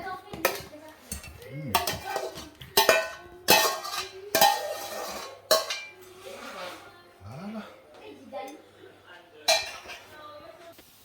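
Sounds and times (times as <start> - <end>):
metal utensil knocking a pot: 0.4 - 5.9.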